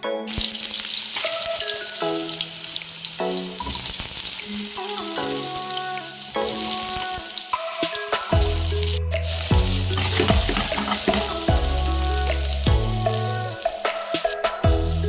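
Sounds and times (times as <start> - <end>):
background music: 0.0 - 15.0
food sizzling in hot oil: 0.3 - 15.0.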